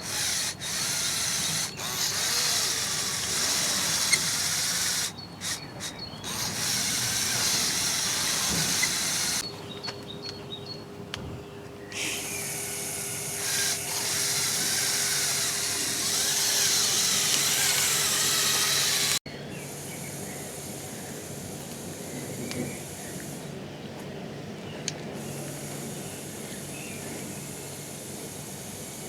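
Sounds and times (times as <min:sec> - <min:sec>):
small electric motors whining: 0:00.0 - 0:09.4, 0:12.0 - 0:19.2.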